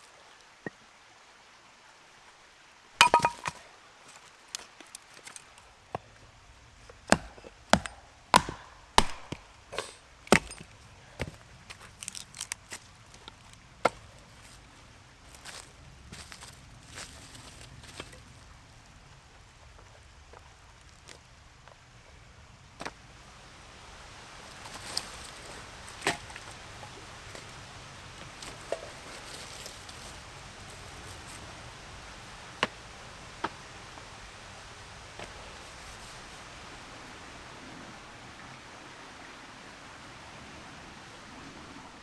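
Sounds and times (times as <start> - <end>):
faint steady hiss: 0.0 - 42.0
sharp irregular knocks and clicks: 7.2 - 10.5.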